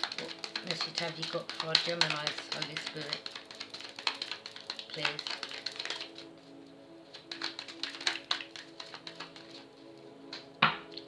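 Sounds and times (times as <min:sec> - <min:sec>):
cards being shuffled: 0:00.0 - 0:06.3, 0:07.1 - 0:09.7
soft background music: 0:00.0 - 0:11.0.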